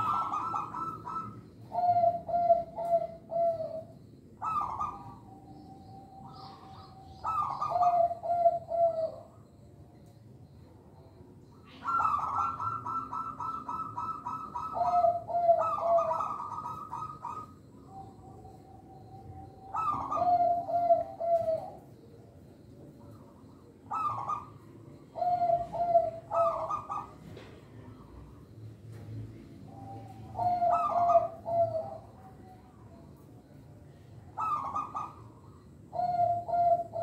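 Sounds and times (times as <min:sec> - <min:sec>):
dove cooing: 0:00.0 - 0:09.7, 0:11.0 - 0:37.0.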